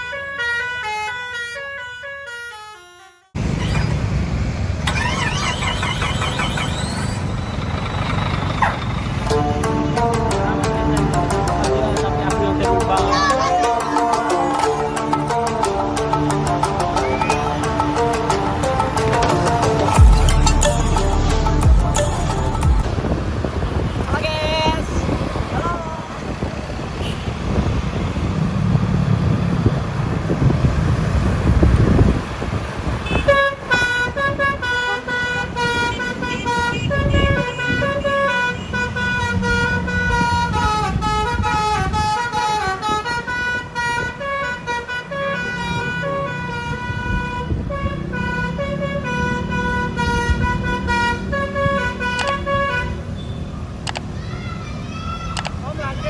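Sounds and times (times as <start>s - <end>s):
bus musical air horn melody: 0.0s - 3.4s, 9.2s - 11.6s, 33.0s - 53.2s
low rumble of wind and road: 3.3s - 56.0s.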